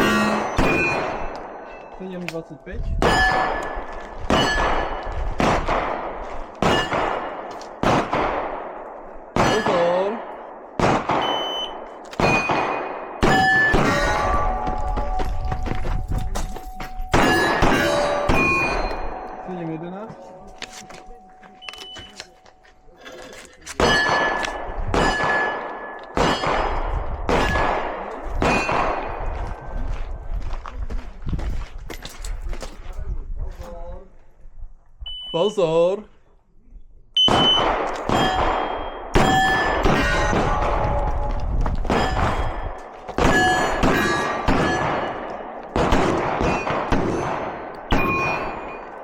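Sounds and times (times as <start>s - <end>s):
pistol shots: 0.0s - 1.7s, 3.0s - 14.6s, 17.1s - 19.4s, 23.8s - 29.4s, 37.2s - 41.2s, 41.8s - 49.0s
steel plate target ringing: 0.0s - 2.0s, 3.0s - 5.0s, 6.6s - 7.2s, 12.2s - 15.0s, 16.7s - 20.0s, 38.1s - 45.4s, 46.4s - 49.0s.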